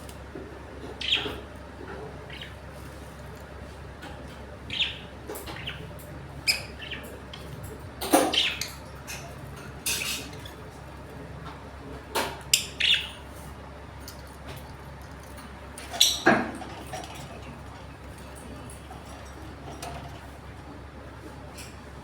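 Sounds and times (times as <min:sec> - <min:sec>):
lovebirds chirping: 0:00.9 - 0:01.5, 0:02.2 - 0:02.7, 0:04.6 - 0:08.9, 0:12.4 - 0:13.3.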